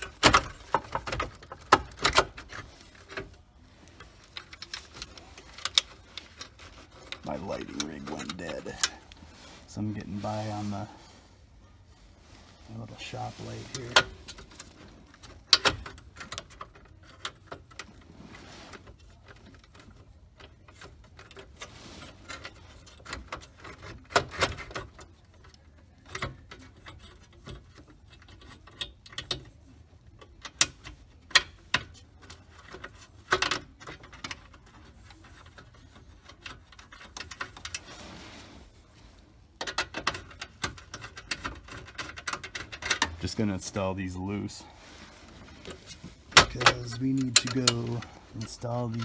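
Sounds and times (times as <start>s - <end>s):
clicks and clatter on plastic trim: 0.0s - 9.2s, 13.8s - 18.0s, 18.7s - 37.9s, 39.6s - 43.2s.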